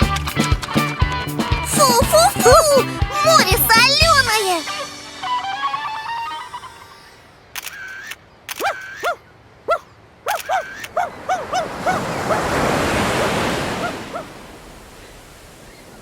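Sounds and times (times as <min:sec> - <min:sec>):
cartoon dog yapping: 0:01.7 - 0:04.6, 0:08.6 - 0:12.5
sharp clicks: 0:07.5 - 0:08.9, 0:10.3 - 0:11.0
wave rushing in: 0:11.1 - 0:16.0.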